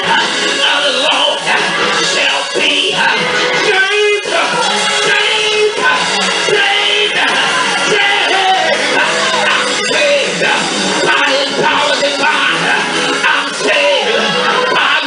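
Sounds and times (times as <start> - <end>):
loud live music: 0.0 - 15.0
people singing: 0.0 - 15.0
people shouting: 1.0 - 15.0.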